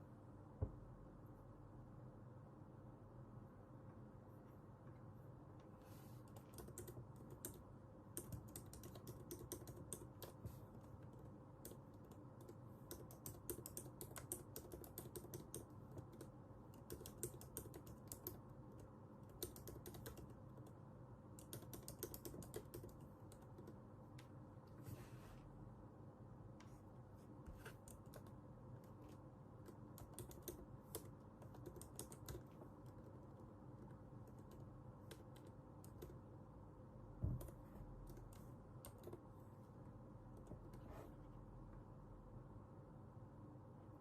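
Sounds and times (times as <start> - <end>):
keyboard typing: 6.2 - 20.8, 21.4 - 24.3, 27.6 - 36.3, 37.2 - 39.2.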